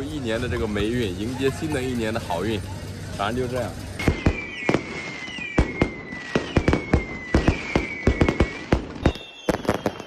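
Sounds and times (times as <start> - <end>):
firecrackers banging: 0.0 - 10.0
high firework whistles: 3.7 - 10.0.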